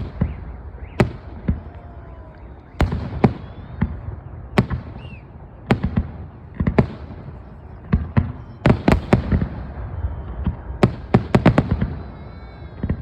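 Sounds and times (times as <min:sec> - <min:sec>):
echoing rumble: 0:00.0 - 0:13.0.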